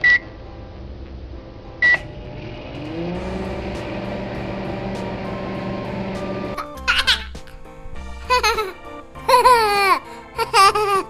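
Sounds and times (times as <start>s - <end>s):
microwave beeping: 1.8s - 6.6s
microwave humming: 1.8s - 6.8s.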